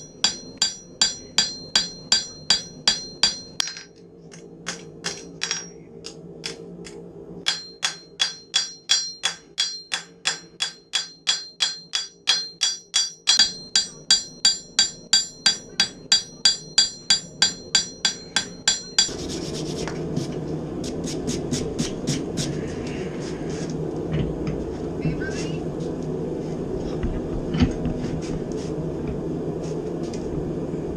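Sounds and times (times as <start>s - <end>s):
hammer striking steel on anvil: 0.0s - 3.9s, 4.7s - 5.8s, 7.4s - 19.1s.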